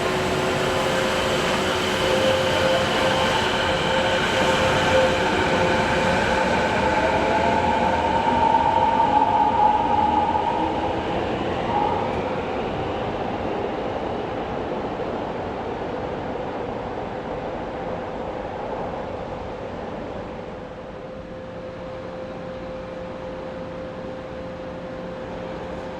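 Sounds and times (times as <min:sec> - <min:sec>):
train rolling noise: 0:00.0 - 0:25.9.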